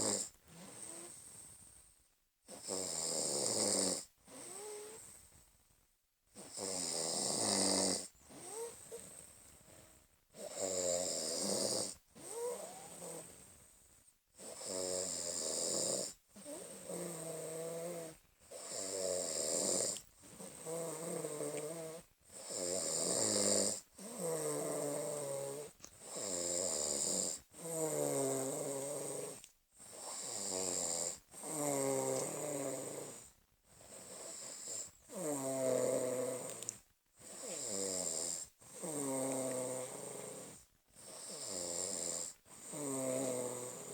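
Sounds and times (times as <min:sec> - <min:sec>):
person snoring: 0:06.4 - 0:09.1, 0:14.4 - 0:33.3, 0:33.9 - 0:43.9.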